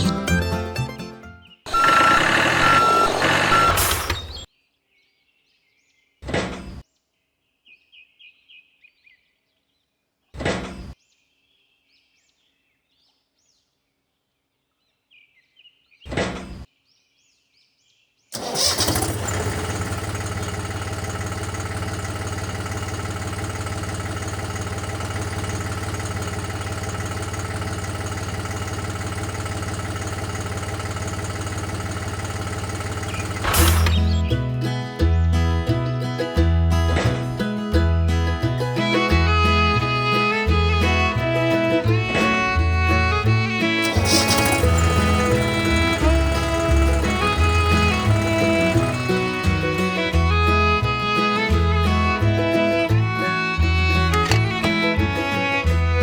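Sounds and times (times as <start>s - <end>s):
birds chirping: 1.4s - 4.5s, 18.4s - 34.4s, 41.8s - 50.8s
small motor humming: 1.7s - 4.5s, 18.4s - 34.3s, 38.8s - 56.0s.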